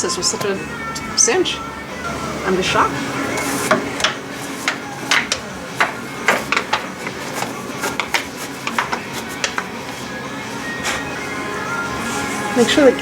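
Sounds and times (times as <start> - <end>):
metal tools clinking and knocking: 3.4 - 10.2.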